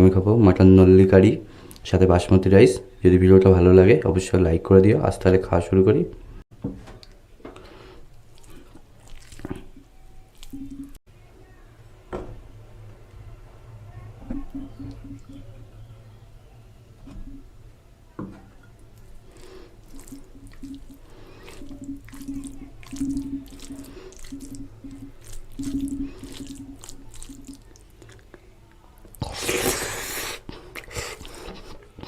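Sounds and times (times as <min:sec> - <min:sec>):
wet chewing and smacking: 0:08.1 - 0:11.0, 0:18.7 - 0:32.0.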